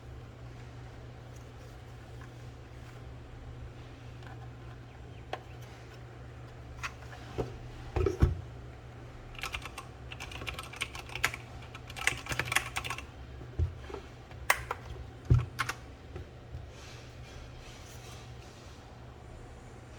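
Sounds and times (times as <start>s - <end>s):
mechanical keyboard key clacks: 9.4s - 13.0s.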